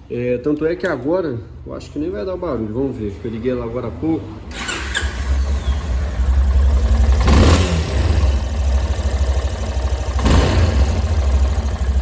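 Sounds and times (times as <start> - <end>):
motorcycle engine idling: 4.5 - 12.0.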